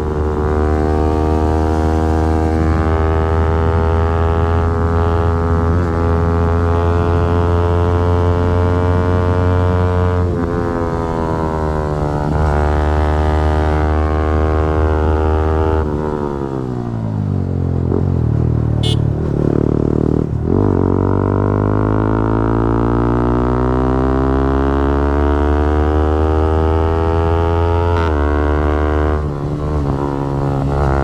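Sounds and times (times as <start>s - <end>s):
motorcycle engine revving: 18.8s - 31.0s.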